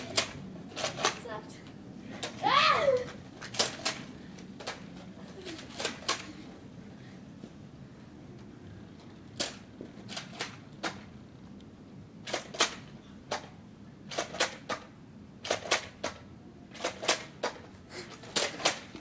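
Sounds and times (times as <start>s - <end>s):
toy blaster plastic clacks: 0.0s - 1.2s, 3.4s - 4.8s, 5.6s - 6.3s, 9.4s - 11.0s, 12.2s - 13.5s, 14.1s - 14.8s, 15.4s - 19.0s.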